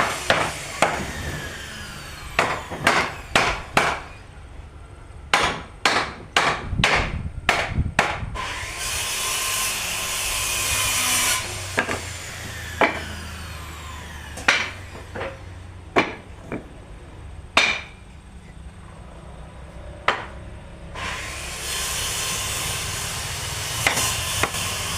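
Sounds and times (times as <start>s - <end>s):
hammer striking wood: 0.0s - 1.2s, 2.4s - 4.2s, 5.3s - 8.3s, 11.8s - 12.2s, 12.8s - 13.2s, 14.4s - 16.7s, 17.6s - 18.0s, 20.0s - 20.4s, 23.8s - 24.9s
power tool whining: 0.0s - 4.4s, 8.4s - 15.7s, 20.9s - 24.9s.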